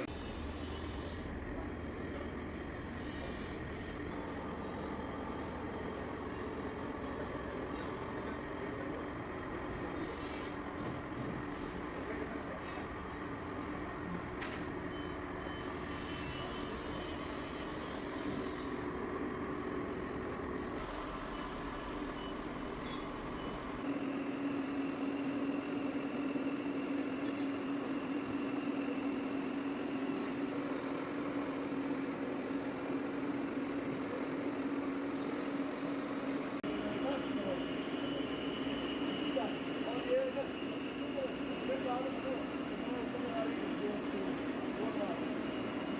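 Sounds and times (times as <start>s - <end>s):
metal lathe humming: 0.0s - 23.8s, 36.1s - 45.9s.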